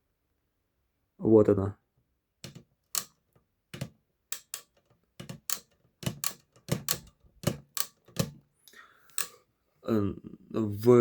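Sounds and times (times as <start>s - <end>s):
typewriter lever mechanical clicks: 2.4s - 3.2s, 3.8s - 8.4s.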